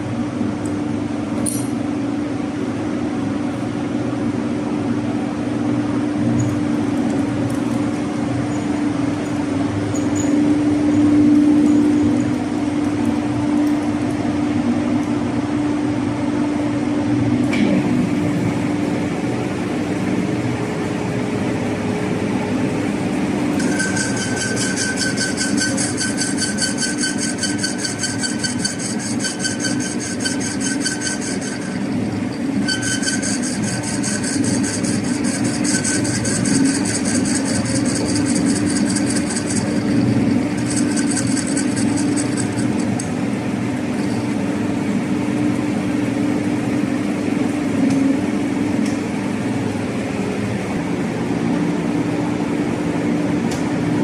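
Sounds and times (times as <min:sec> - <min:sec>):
metal lathe humming: 0:18.0 - 0:45.4.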